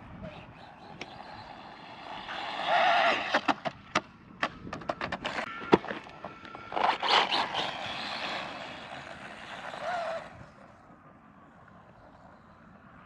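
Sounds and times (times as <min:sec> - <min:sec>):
electric motor whine: 0:00.2 - 0:03.5, 0:05.3 - 0:10.7
tyres on dirt: 0:00.2 - 0:10.8.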